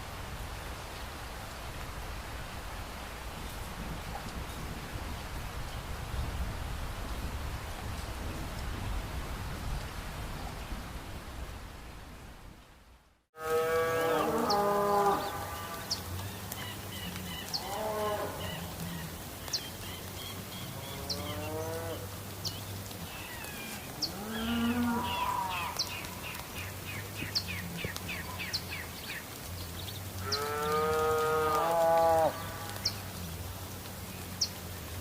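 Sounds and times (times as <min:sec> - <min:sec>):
steady background hiss: 0:00.0 - 0:35.0
cattle mooing: 0:13.4 - 0:15.9, 0:17.6 - 0:18.4, 0:24.0 - 0:25.8, 0:30.2 - 0:32.7.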